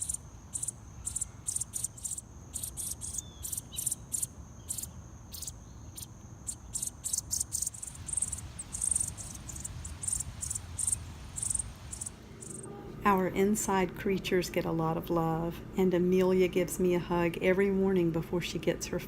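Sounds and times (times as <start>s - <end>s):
high insect trill: 0.0s - 12.8s
insects chirping: 0.0s - 12.8s.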